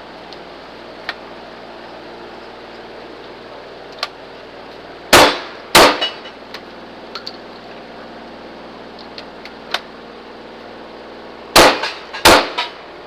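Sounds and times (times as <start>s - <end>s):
gunshots: 5.1s - 6.2s, 11.6s - 12.8s.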